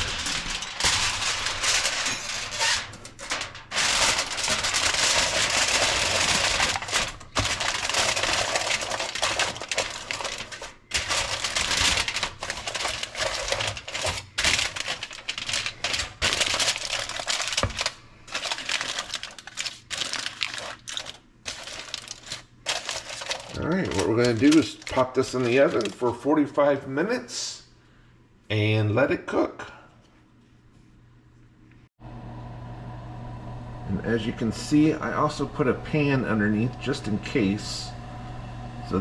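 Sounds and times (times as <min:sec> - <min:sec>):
aluminum foil crinkling: 0:00.0 - 0:26.2.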